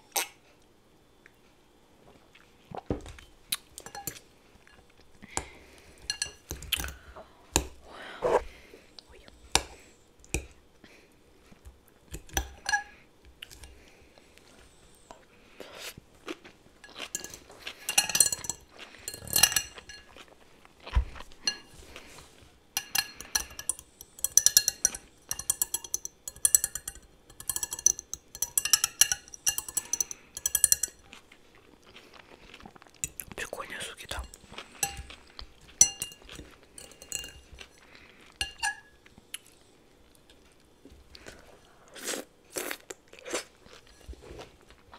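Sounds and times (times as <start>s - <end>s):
cutlery clinking on a plate: 3.8s - 4.8s, 6.0s - 6.9s, 16.8s - 20.2s, 21.4s - 21.7s, 22.8s - 31.1s, 34.2s - 37.8s, 38.4s - 38.9s.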